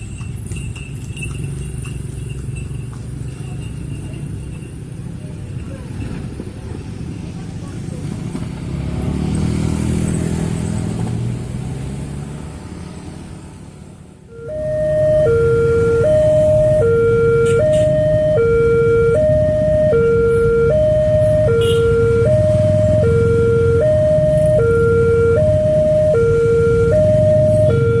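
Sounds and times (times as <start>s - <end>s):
two-tone level crossing siren: 14.3s - 28.0s.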